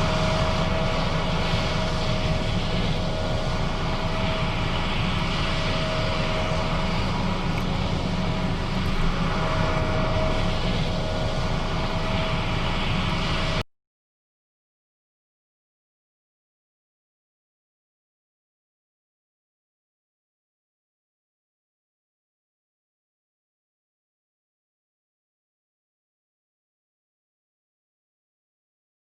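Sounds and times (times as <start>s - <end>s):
high whine: 0.0s - 13.6s.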